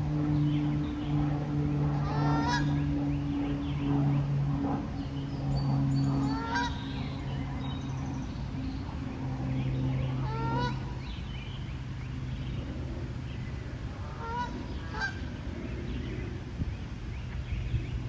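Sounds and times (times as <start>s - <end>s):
low steady hum: 0.0s - 18.0s
geese honking: 1.9s - 2.9s, 6.2s - 7.2s, 10.2s - 11.0s, 14.0s - 15.3s.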